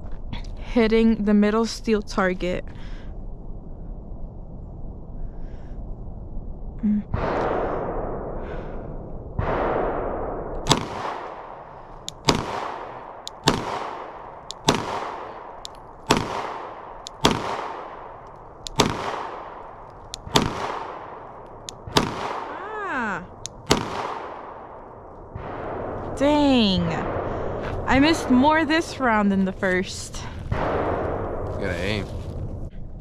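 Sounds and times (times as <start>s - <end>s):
pistol shots echoing: 10.6s - 22.6s, 23.3s - 26.0s.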